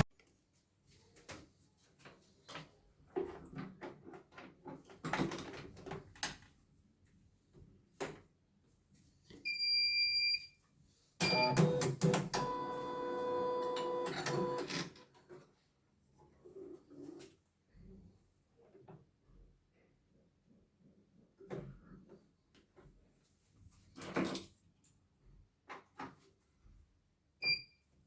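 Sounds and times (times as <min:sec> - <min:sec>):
multi-tone machine sound: 0:11.2 - 0:14.9.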